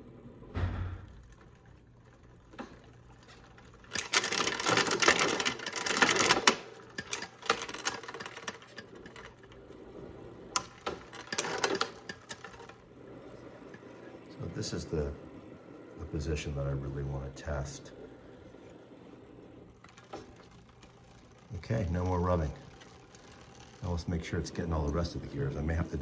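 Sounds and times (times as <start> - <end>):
bicycle chain clattering over cogs: 1.1 - 15.2, 19.6 - 26.0.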